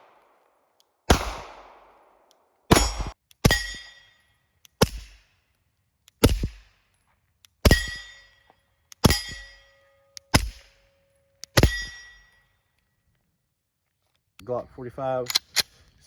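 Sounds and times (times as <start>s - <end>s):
suppressed pistol shots: 1.1s - 4.0s, 4.8s - 5.3s, 6.2s - 6.7s, 7.6s - 8.2s, 10.2s - 10.8s
short metallic ring: 2.8s - 4.2s, 7.7s - 10.2s, 11.6s - 12.5s.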